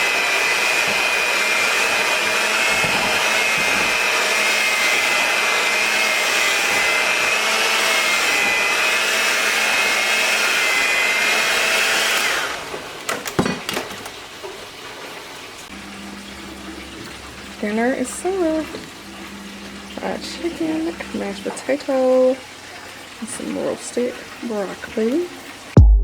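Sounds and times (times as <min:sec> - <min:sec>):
appliance motor whining: 0:00.0 - 0:13.4, 0:15.7 - 0:23.2
clicks and knocks: 0:12.7 - 0:14.6.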